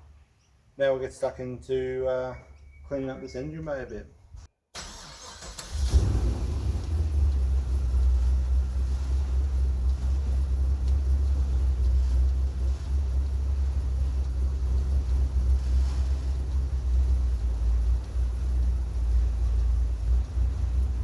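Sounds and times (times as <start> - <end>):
car engine idling: 4.8 - 21.0.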